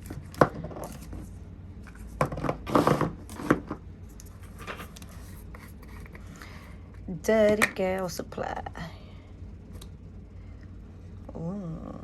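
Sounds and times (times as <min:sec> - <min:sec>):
rustling scrapes and knocks: 0:01.9 - 0:06.3.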